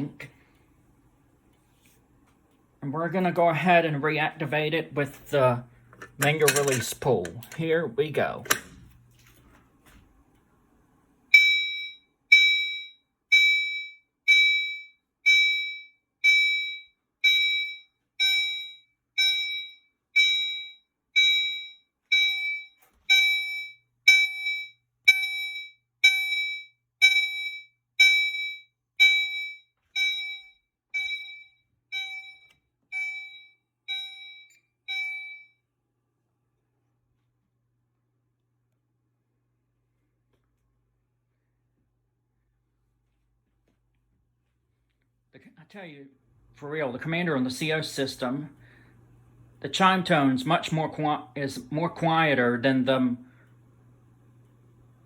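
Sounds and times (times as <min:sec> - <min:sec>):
fire alarm chime ringing: 0:11.3 - 0:35.7.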